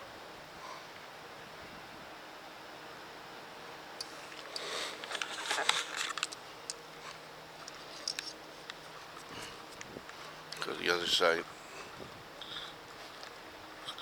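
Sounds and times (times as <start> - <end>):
steady hiss: 0.0 - 14.0
microphone handling clicks and rustles: 4.0 - 10.8.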